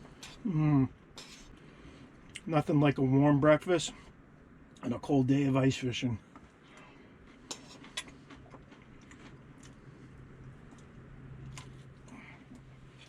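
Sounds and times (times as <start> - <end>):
steady low hum: 0.0 - 13.0
person chewing and biting: 7.2 - 12.7.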